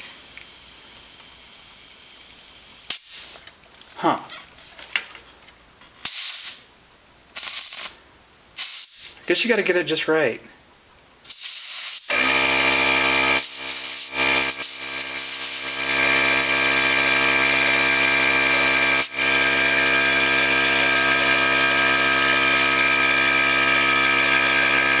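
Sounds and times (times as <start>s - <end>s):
air compressor motor running: 0.0s - 3.4s, 11.4s - 25.0s.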